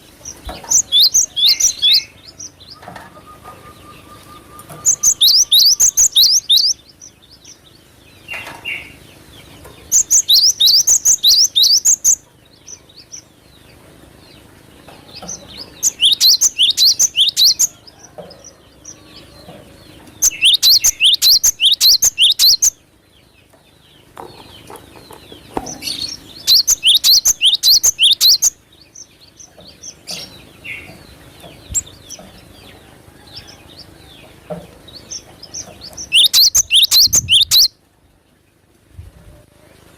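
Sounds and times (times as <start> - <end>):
bird singing rapid rising notes: 0.0 - 13.6, 14.4 - 17.8, 18.7 - 23.3, 24.0 - 32.8, 34.9 - 37.8
soft bird calls and clicks: 8.2 - 8.9, 29.1 - 32.8.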